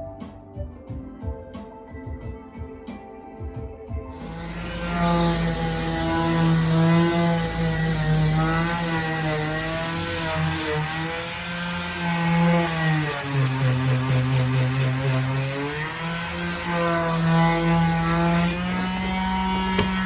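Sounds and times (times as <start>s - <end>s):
electric power tool droning: 4.1s - 20.0s.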